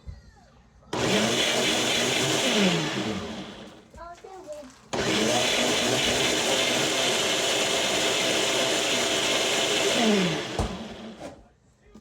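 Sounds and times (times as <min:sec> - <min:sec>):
blender running: 0:01.0 - 0:03.9, 0:04.9 - 0:11.2.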